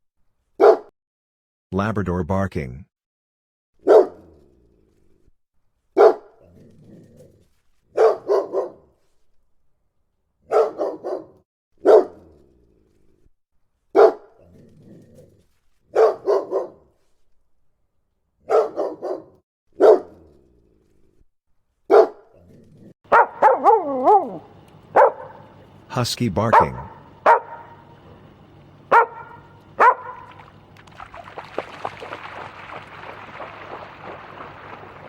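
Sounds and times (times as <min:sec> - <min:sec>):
dog barking deeply: 0:03.8 - 0:04.2, 0:06.0 - 0:06.2, 0:08.0 - 0:08.8, 0:10.5 - 0:12.1, 0:16.0 - 0:16.8, 0:18.5 - 0:20.1, 0:21.9 - 0:22.2, 0:23.1 - 0:25.7, 0:26.4 - 0:27.8, 0:28.9 - 0:35.0.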